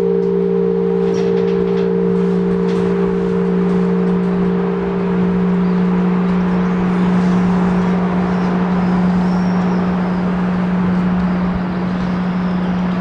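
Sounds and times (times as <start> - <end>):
church bell humming: 0.9 - 13.0
steady rushing background noise: 0.9 - 13.0.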